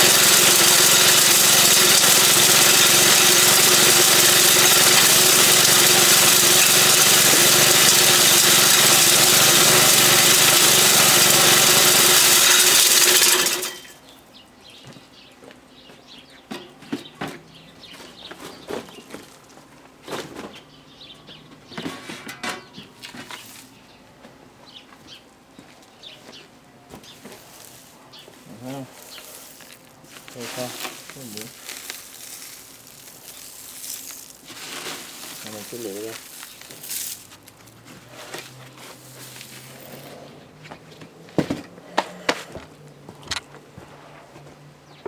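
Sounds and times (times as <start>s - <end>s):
small engine running: 0.0s - 14.0s, 29.0s - 37.8s.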